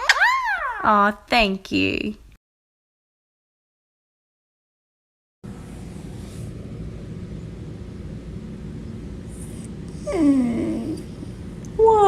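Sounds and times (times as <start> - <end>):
low rumbling background noise: 5.5 - 12.0.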